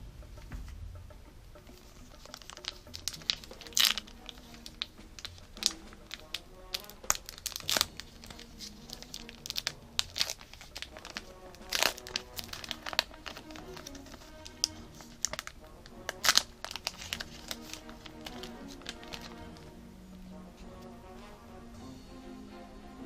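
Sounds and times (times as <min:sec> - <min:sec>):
cards being handled: 0:01.8 - 0:19.7
wrappers crinkling: 0:01.8 - 0:19.7.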